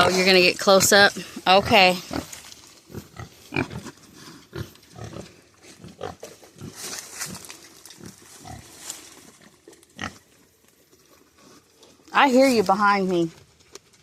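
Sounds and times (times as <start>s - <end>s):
pigs grunting: 1.0s - 8.7s, 9.4s - 10.3s.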